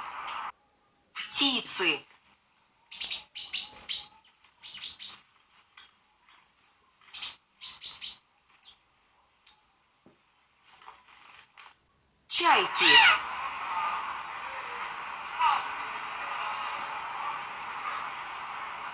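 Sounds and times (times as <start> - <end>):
small birds chirping: 2.1 - 10.4.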